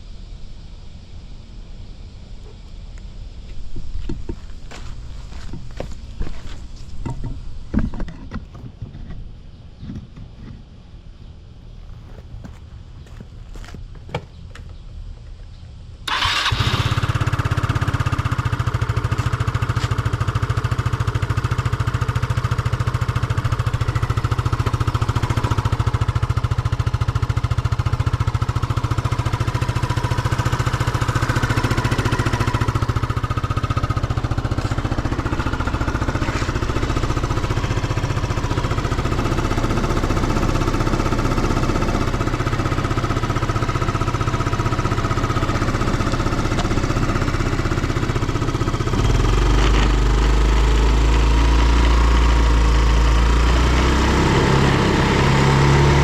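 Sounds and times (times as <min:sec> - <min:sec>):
scooter engine starting and idling: 0:04.0 - 0:07.4, 0:16.0 - 0:56.0.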